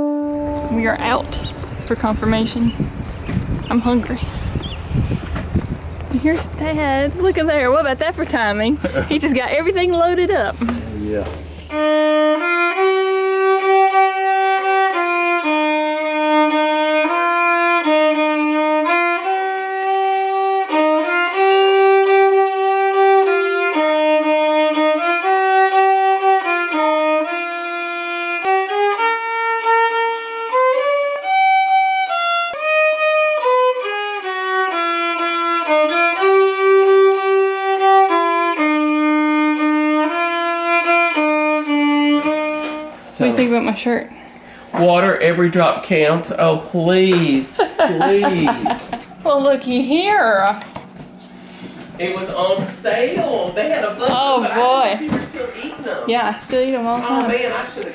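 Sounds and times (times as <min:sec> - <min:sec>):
single instrument playing a melody: 0:00.0 - 0:04.6, 0:11.7 - 0:43.7.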